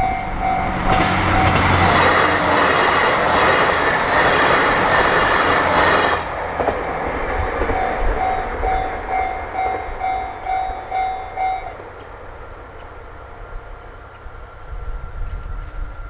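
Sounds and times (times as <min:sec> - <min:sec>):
level crossing warning bell: 0:00.0 - 0:04.8, 0:07.6 - 0:12.1
diesel train passing: 0:00.0 - 0:16.0.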